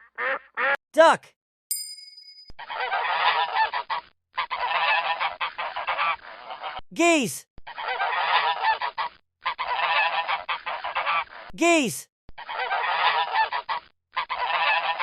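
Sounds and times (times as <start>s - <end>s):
geese honking and cackling: 2.6s - 6.8s, 7.7s - 11.5s, 12.4s - 15.0s.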